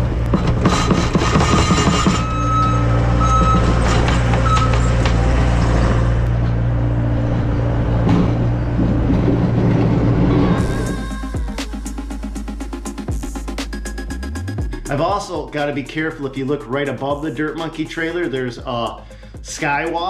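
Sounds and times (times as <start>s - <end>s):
high hydraulic whine: 0.0s - 14.6s
diesel engine running under load: 0.0s - 14.9s
knocks: 0.3s - 2.3s, 3.4s - 5.2s.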